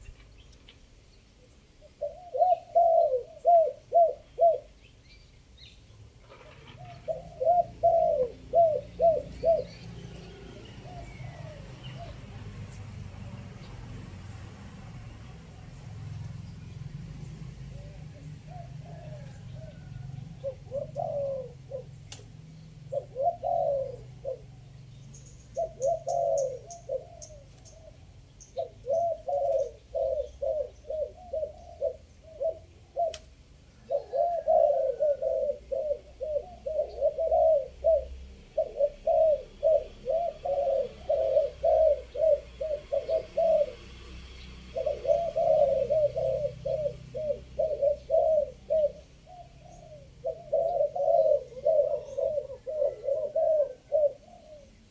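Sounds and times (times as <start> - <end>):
doves cooing: 0.0 - 4.9, 6.0 - 54.9.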